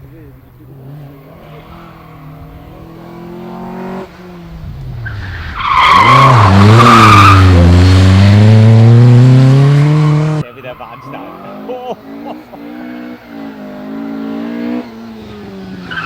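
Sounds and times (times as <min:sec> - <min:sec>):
rally car engine revving: 0:00.0 - 0:16.0
tyre squeal: 0:05.0 - 0:08.2, 0:14.7 - 0:16.0.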